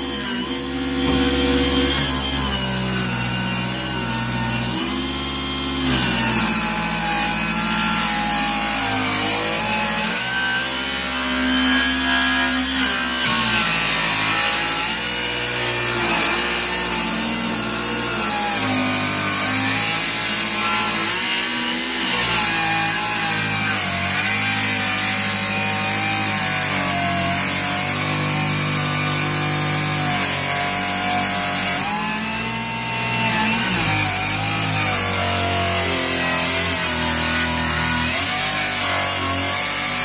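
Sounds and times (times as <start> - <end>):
circular saw cutting wood: 0.0 - 40.0.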